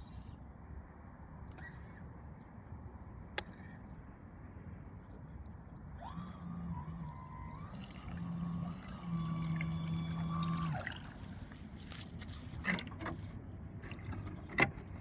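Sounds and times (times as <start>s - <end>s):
electric motor whine: 6.0s - 12.1s.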